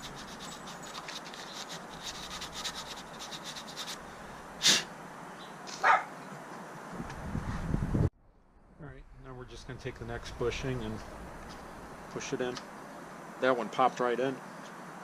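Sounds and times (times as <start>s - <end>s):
sandpaper scratching metal: 0.0s - 4.1s.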